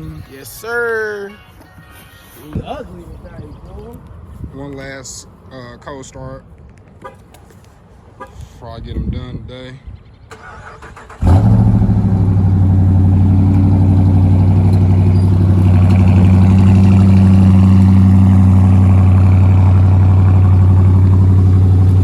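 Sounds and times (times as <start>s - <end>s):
car engine starting and idling: 10.3s - 22.0s.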